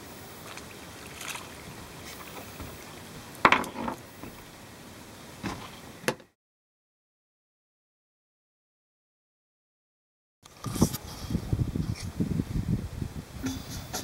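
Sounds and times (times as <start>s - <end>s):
water washing around boat: 0.0s - 6.0s.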